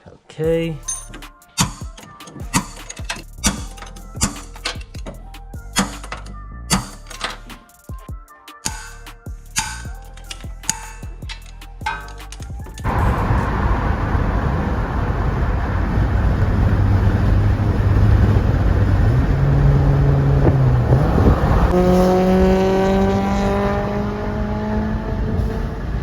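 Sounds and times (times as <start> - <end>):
road and wind noise: 2.4 - 7.5, 9.6 - 26.0
car engine accelerating: 12.8 - 26.0.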